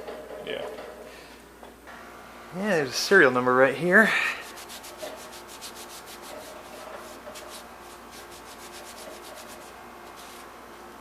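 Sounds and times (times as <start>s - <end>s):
scrubbing on metal frame: 4.4s - 10.5s.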